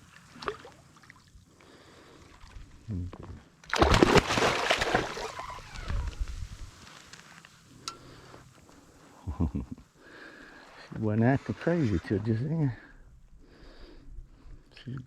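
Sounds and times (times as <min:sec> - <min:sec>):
fish splashing at water surface: 0:03.7 - 0:05.8.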